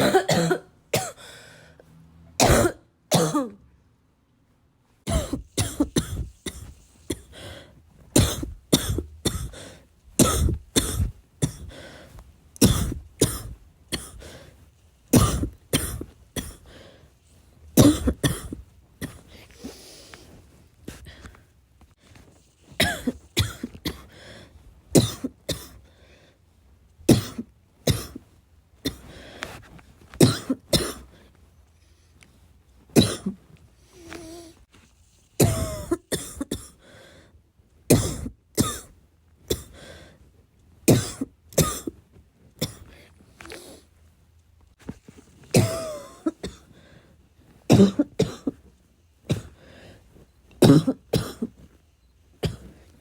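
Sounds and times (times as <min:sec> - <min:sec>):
person coughing: 0:00.0 - 0:01.3, 0:02.4 - 0:03.6, 0:05.1 - 0:07.4, 0:08.2 - 0:09.6, 0:10.2 - 0:11.7, 0:12.6 - 0:14.2, 0:15.2 - 0:16.6, 0:17.8 - 0:19.3, 0:22.8 - 0:24.1, 0:30.2 - 0:31.1, 0:33.0 - 0:33.4, 0:35.4 - 0:36.8, 0:37.9 - 0:38.9, 0:40.9 - 0:41.9, 0:45.5 - 0:46.7, 0:47.7 - 0:48.6, 0:50.6 - 0:51.6.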